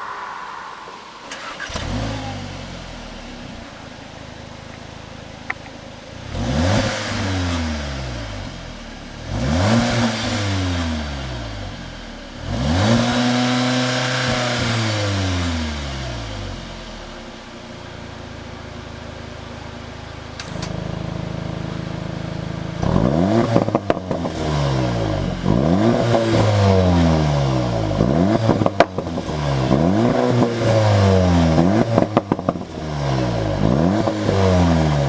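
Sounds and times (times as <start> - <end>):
car engine idling and revving: 0.9 - 35.0.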